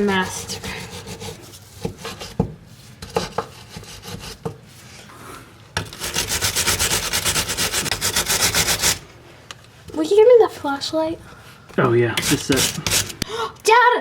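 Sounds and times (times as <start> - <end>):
wire brush scrubbing metal: 5.8 - 9.0, 12.2 - 13.2.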